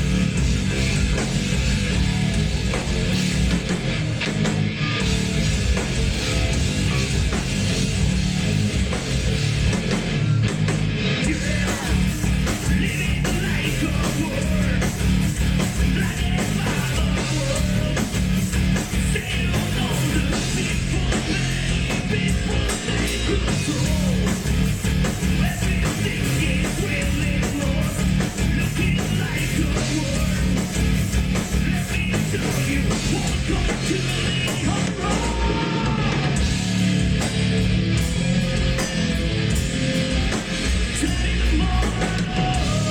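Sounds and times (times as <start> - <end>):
heavy metal music: 0.0 - 42.9.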